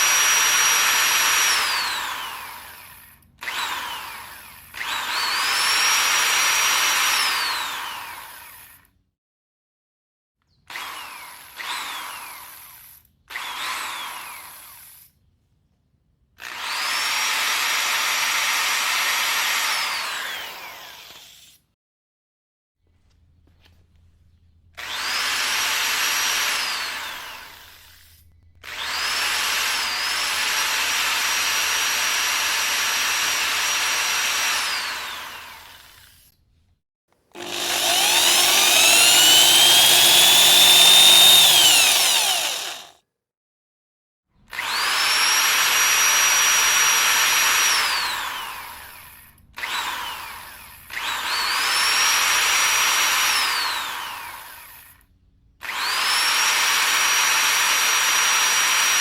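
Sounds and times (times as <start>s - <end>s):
electric drill whine: 0.0s - 2.6s, 37.4s - 42.9s.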